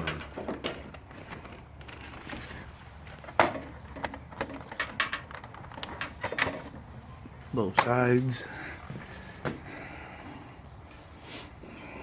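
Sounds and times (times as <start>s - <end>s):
motorcycle fairing clicks and knocks: 0.0s - 6.9s.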